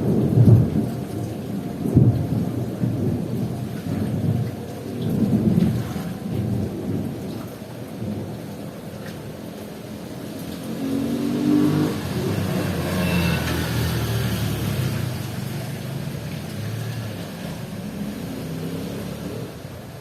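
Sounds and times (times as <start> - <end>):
heavy rain hiss: 5.1 - 20.0
vehicle engine accelerating past: 10.5 - 19.6.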